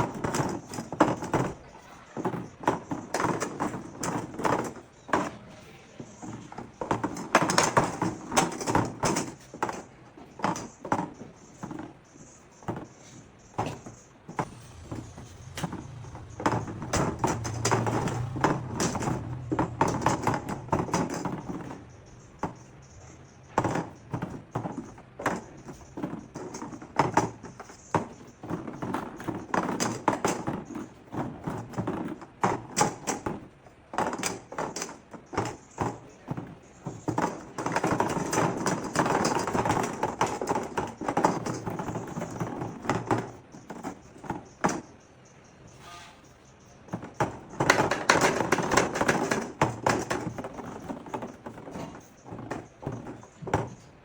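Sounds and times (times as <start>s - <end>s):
irregular knocks and clatter: 0.0s - 45.7s, 46.4s - 54.0s
low hum: 14.4s - 20.7s.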